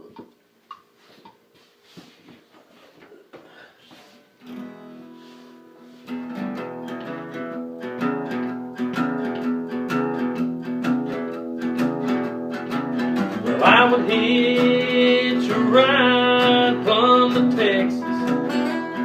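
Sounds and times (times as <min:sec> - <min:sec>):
acoustic guitar strumming: 0:03.9 - 0:19.0.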